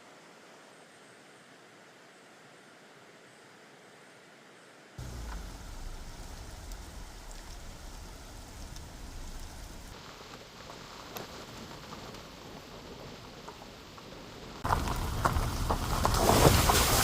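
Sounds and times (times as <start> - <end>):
faint ticks: 5.0 - 10.0.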